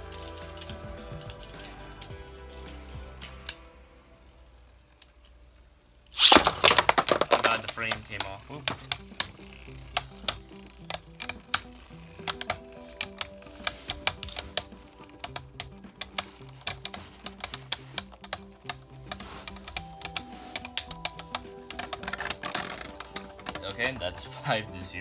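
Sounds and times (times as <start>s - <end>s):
background music: 0.0s - 25.0s
spinning tops clacking: 6.2s - 24.2s.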